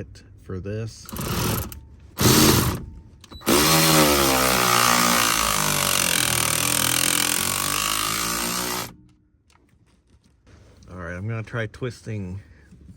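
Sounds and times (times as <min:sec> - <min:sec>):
power tool whirring: 0:01.1 - 0:09.0.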